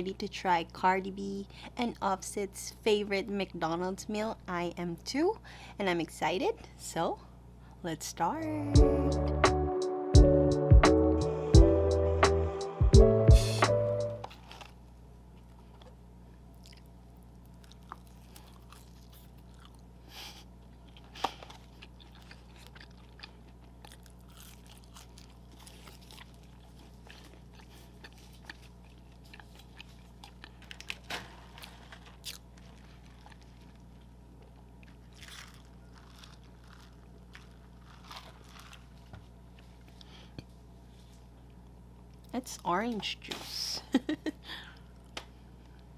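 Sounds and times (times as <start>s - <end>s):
low room hum: 0.0s - 45.9s
crunchy eating and chewing: 14.3s - 42.3s.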